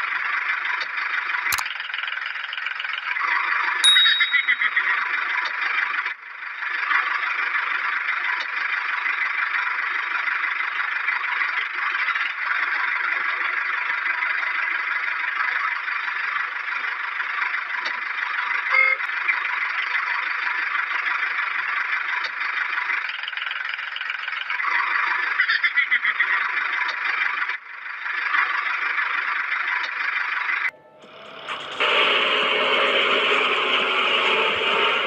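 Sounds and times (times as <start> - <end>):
brief ringing tone: 3.8 - 5.0.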